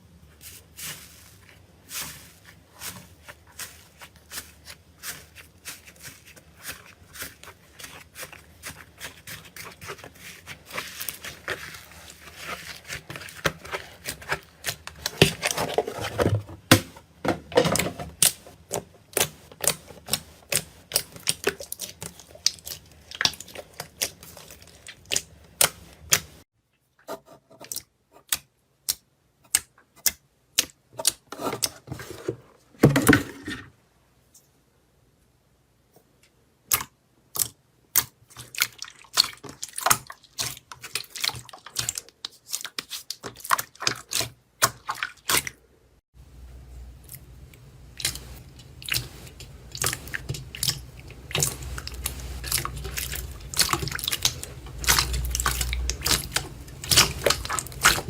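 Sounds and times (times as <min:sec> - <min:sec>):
slime clicking and squishing: 0:18.2 - 0:26.4, 0:36.7 - 0:45.5, 0:47.0 - 0:58.0.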